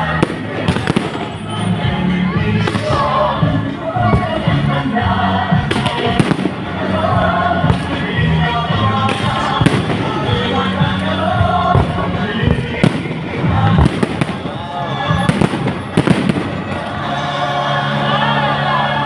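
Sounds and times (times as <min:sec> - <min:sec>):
fireworks exploding: 0:00.0 - 0:01.8, 0:02.6 - 0:04.7, 0:05.5 - 0:17.1
loud music: 0:00.0 - 0:19.0.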